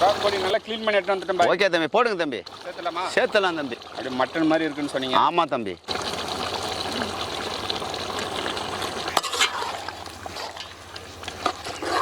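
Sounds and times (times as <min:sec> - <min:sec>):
ladle stirring in pot: 0:07.4 - 0:12.0
ladle clinking on metal pot: 0:09.2 - 0:09.8.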